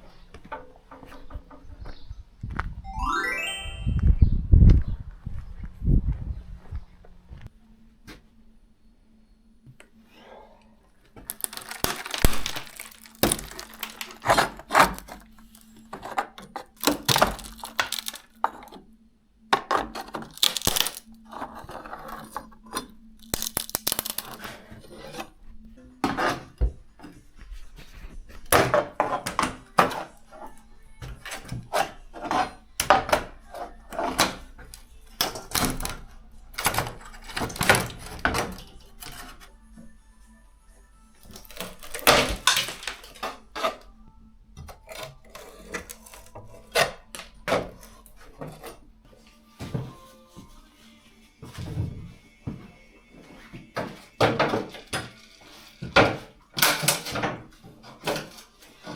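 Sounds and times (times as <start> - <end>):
wooden floorboards cracking: 11.2 - 15.8, 16.8 - 18.4, 20.2 - 21.1, 23.2 - 24.5, 41.2 - 43.1.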